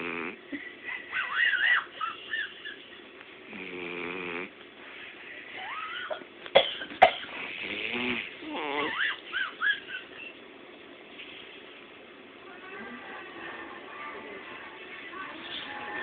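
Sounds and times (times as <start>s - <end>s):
dog snoring: 0.0s - 0.4s, 3.5s - 4.6s, 7.4s - 8.9s.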